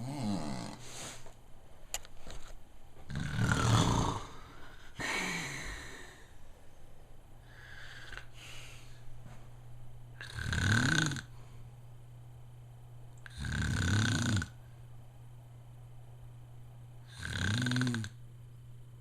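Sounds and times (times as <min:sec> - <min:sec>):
person snoring: 0:00.0 - 0:01.1, 0:03.1 - 0:06.3, 0:10.2 - 0:11.4, 0:13.2 - 0:14.6, 0:17.0 - 0:18.2
quiet breathing: 0:00.0 - 0:01.4, 0:03.4 - 0:11.9.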